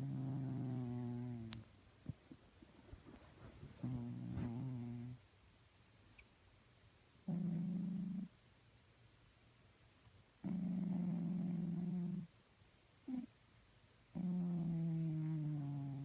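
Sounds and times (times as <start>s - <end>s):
cat snoring: 0.0s - 1.6s, 3.8s - 5.2s, 7.3s - 8.3s, 10.4s - 12.3s, 14.1s - 16.0s.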